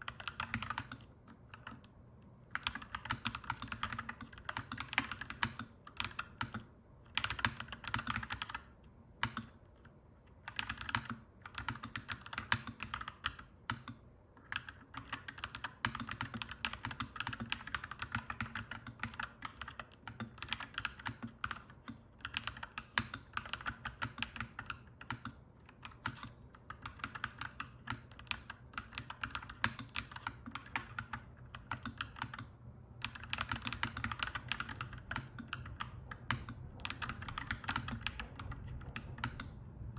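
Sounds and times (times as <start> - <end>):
mechanical keyboard typing: 0.0 - 1.9, 2.5 - 9.6, 10.4 - 39.6.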